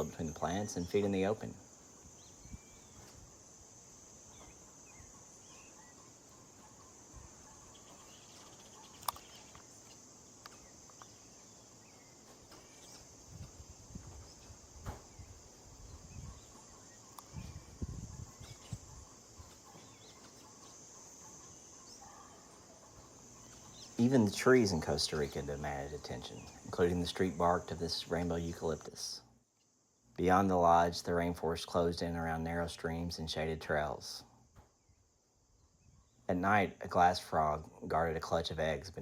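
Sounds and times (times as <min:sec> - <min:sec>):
bird chirps: 0:00.0 - 0:03.2, 0:04.2 - 0:13.2, 0:14.1 - 0:28.6
high insect drone: 0:00.0 - 0:39.0
sharp clicks: 0:09.0 - 0:09.7.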